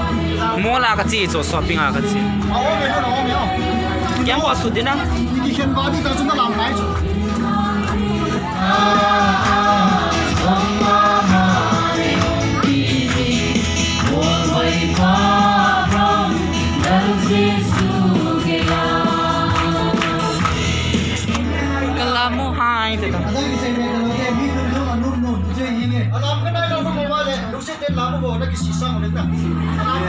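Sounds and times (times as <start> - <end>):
choir singing: 0.0 - 0.6, 1.4 - 22.0
instrumental backing: 0.0 - 30.0.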